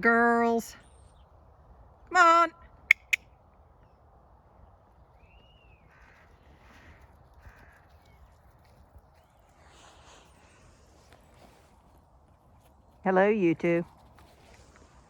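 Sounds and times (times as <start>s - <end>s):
faint crows cawing: 5.8s - 8.8s.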